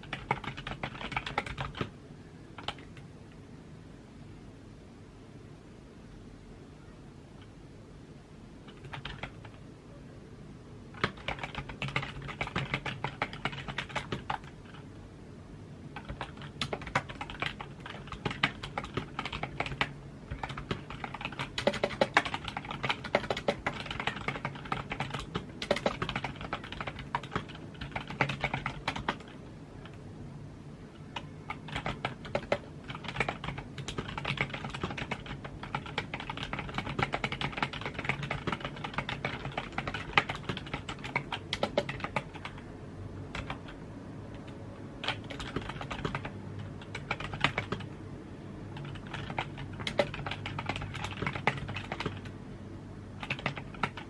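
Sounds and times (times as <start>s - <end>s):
typing on computer keyboard: 0.0s - 1.9s, 2.6s - 3.1s, 8.6s - 9.6s, 10.9s - 14.9s, 15.9s - 30.0s, 30.9s - 42.7s, 43.3s - 48.0s, 48.7s - 52.4s, 53.2s - 54.0s.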